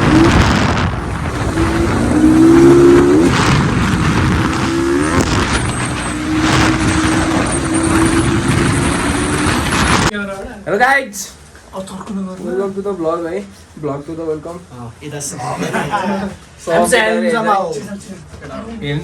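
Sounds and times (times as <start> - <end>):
heavy wind noise: 0.0 - 10.1
vehicle engine running: 0.0 - 10.1
road noise: 0.0 - 19.0.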